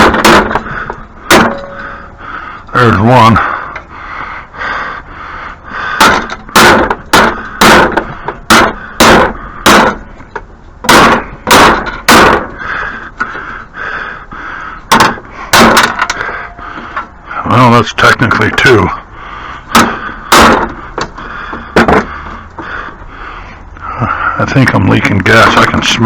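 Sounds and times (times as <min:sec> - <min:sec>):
hammer striking metal: 0:00.0 - 0:00.6, 0:01.3 - 0:01.8, 0:06.0 - 0:10.1, 0:10.8 - 0:12.5, 0:14.9 - 0:16.1, 0:19.7 - 0:20.8.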